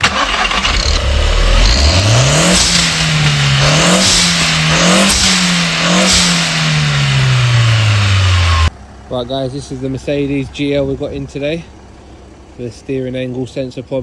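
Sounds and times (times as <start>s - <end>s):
car engine revving: 0.0s - 8.8s.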